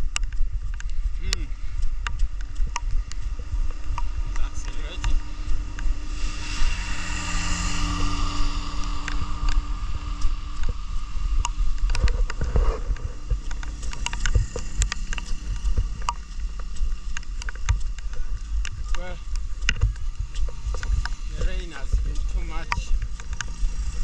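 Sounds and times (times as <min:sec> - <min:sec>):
steady multi-pitch hum: 0:00.0 - 0:24.0
wind buffeting microphone: 0:00.0 - 0:24.0.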